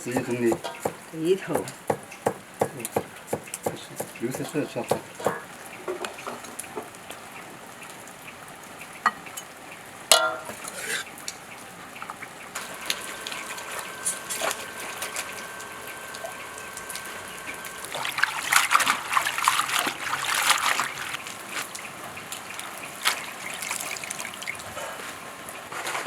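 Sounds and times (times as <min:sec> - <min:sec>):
water trickling and splashing: 0:00.0 - 0:26.0.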